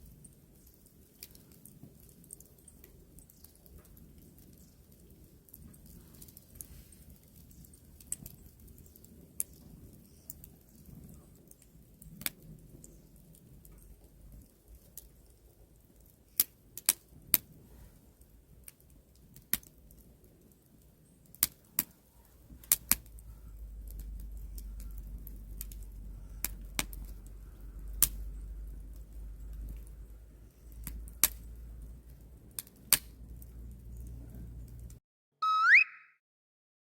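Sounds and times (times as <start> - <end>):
campfire crackling: 0.0 - 35.0
low steady rumble: 22.4 - 35.0.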